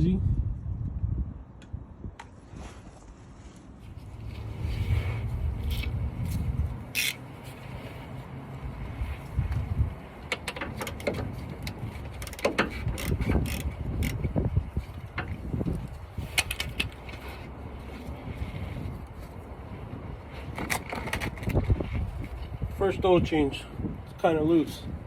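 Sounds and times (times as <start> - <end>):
low rumble: 2.9 - 6.9
socket ratchet clicking: 6.9 - 7.2, 12.2 - 14.2.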